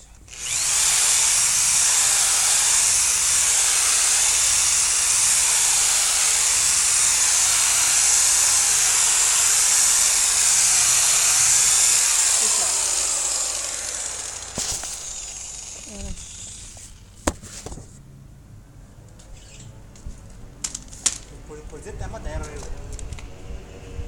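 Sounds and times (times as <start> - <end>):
loud steady hiss: 0.6 - 16.8.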